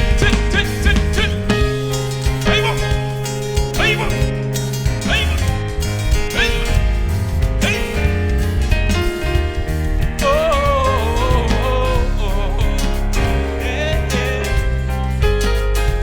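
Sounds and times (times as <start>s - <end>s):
person singing: 0.0s - 4.3s, 5.1s - 5.6s, 10.1s - 15.4s
gospel band playing: 0.0s - 16.0s.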